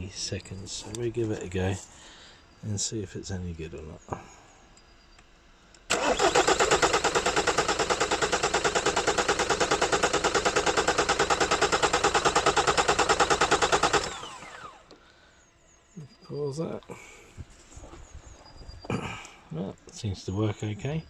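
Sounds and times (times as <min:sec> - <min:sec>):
car engine cranking on starter: 0:05.9 - 0:15.0
starter motor whine spinning down: 0:05.9 - 0:18.8.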